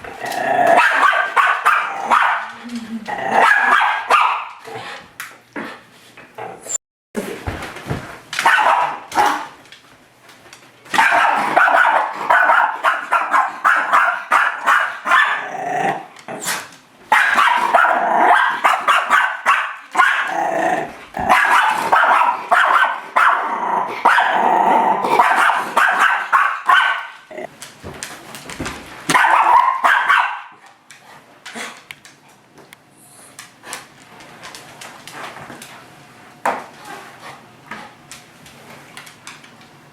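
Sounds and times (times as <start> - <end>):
dog growling: 0.1 - 0.8, 1.9 - 3.5, 15.4 - 16.5, 20.3 - 21.3, 23.4 - 25.3
dog barking: 0.8 - 2.5, 3.4 - 4.6, 8.4 - 9.5, 11.0 - 15.4, 17.1 - 20.3, 21.2 - 24.4, 25.1 - 27.2, 29.1 - 30.6.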